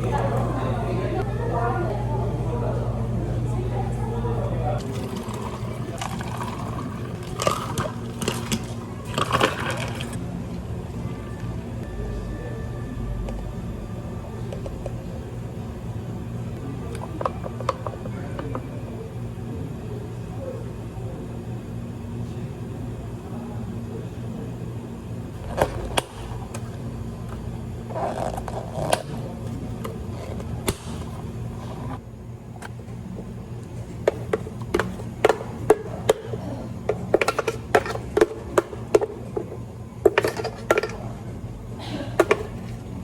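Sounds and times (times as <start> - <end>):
low machine hum: 0.0 - 43.0
cups and utensils clinking: 4.8 - 10.2, 34.1 - 41.1.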